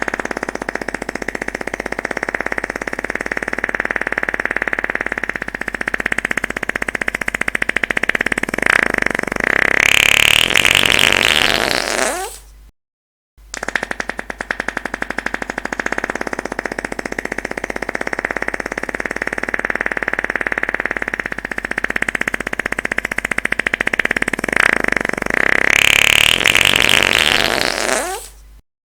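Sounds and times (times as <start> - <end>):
fluttering fart sound: 0.0 - 12.5, 13.5 - 28.4.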